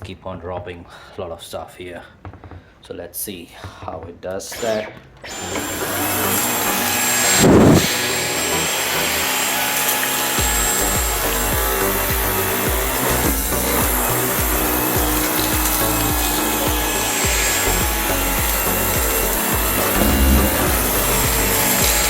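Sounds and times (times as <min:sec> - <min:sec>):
vacuum cleaner running: 0:04.6 - 0:22.0
vacuum head scraping floor: 0:05.3 - 0:22.0.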